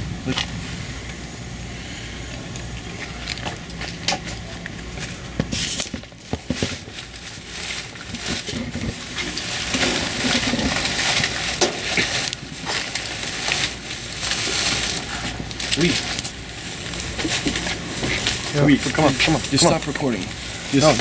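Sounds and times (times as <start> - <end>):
plastic bags rustling: 1.7 - 21.0.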